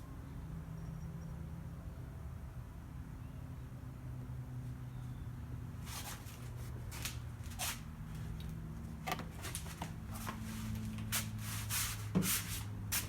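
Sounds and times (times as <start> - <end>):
handling clicks and rustles: 5.9 - 11.4.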